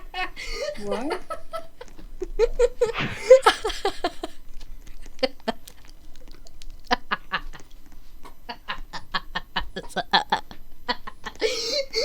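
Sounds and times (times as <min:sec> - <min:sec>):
person wheezing laughter: 0:02.4 - 0:04.4, 0:11.3 - 0:12.0.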